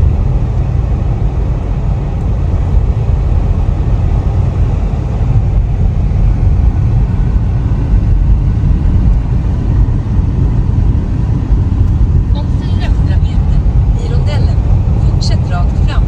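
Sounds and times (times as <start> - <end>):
car driving rumble: 0.0 - 16.0.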